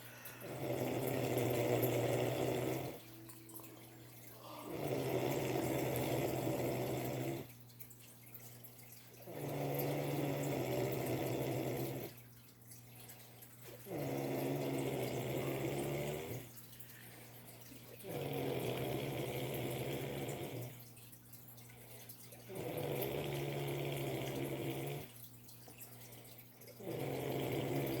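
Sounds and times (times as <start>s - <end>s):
cat snoring: 0.4s - 3.0s, 4.4s - 7.5s, 9.3s - 12.2s, 13.8s - 16.5s, 18.0s - 20.8s, 22.5s - 25.1s, 26.8s - 28.0s
cat breathing: 4.3s - 7.4s.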